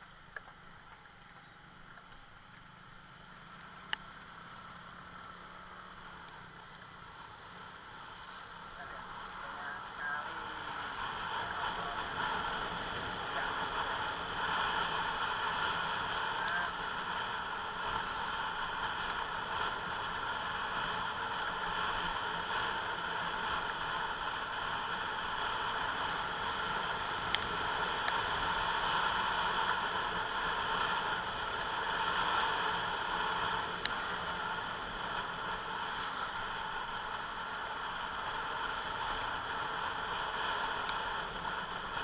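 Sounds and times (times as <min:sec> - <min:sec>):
motor scooter engine running: 0:00.0 - 0:42.0.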